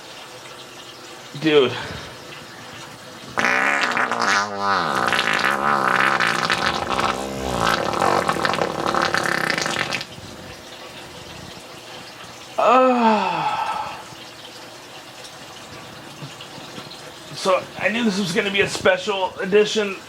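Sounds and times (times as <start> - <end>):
wet fart noise from toy: 3.2 - 10.2.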